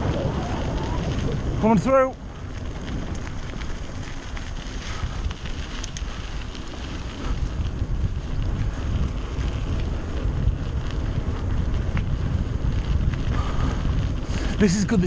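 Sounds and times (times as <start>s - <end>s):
tyres running on trail: 0.0s - 15.0s
wind buffeting microphone: 0.0s - 15.0s
faint clicks: 5.7s - 6.2s.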